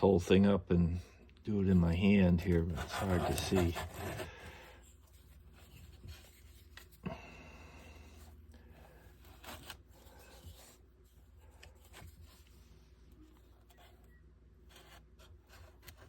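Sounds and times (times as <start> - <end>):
spatula scraping filler: 2.4 - 5.0.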